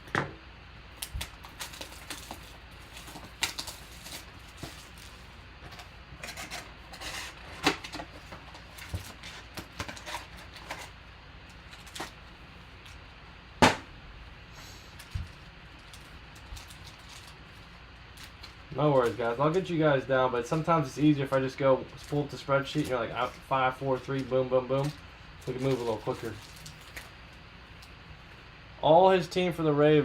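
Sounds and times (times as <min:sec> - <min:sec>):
trading cards being handled: 0:21.4 - 0:27.1.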